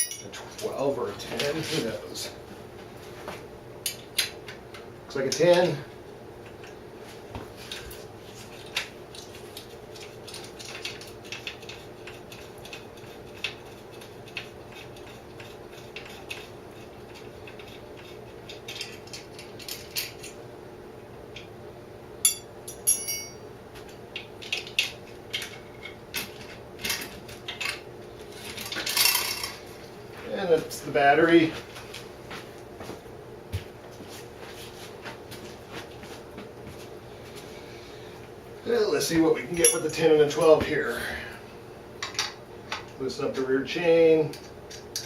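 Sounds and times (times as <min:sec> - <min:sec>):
hand tools clinking on metal: 0:00.0 - 0:00.4, 0:22.3 - 0:23.4, 0:39.5 - 0:40.1
faint hum: 0:00.0 - 0:45.0.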